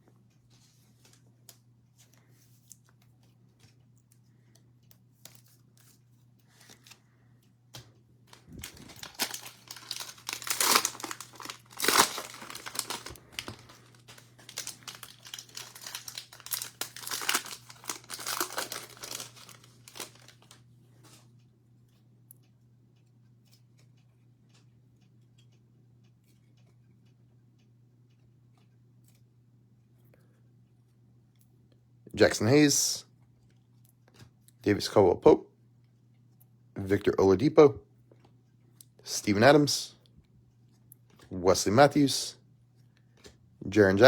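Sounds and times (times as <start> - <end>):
cellophane wrapper crinkling: 8.3 - 20.6.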